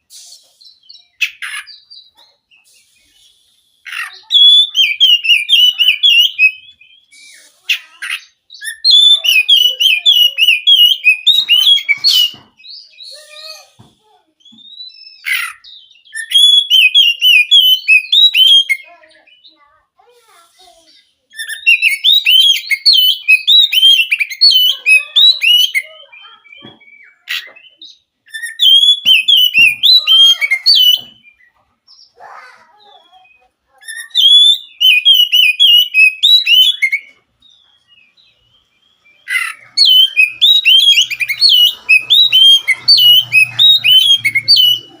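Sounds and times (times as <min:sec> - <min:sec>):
bird singing hooked whistles: 0:26.5 - 0:31.5, 0:33.8 - 0:37.2, 0:39.2 - 0:45.0.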